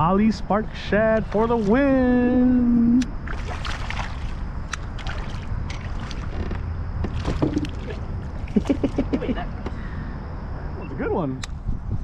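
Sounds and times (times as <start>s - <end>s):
wind rumbling on microphone: 0.0s - 12.0s
water splashing against canoe: 1.0s - 2.6s, 3.2s - 9.1s.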